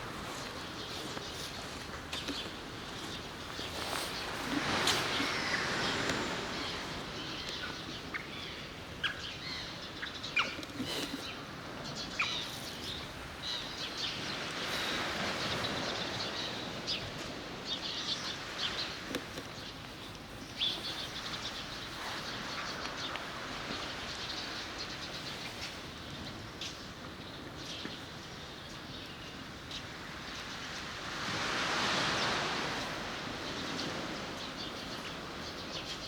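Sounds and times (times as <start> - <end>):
steady background hiss: 0.0 - 27.3
small birds chirping: 0.2 - 26.9.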